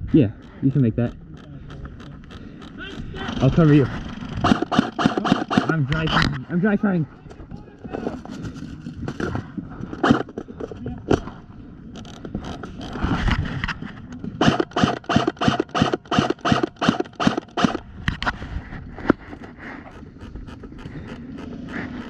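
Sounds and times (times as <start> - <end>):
scraping and handling noise: 7.3 - 22.0.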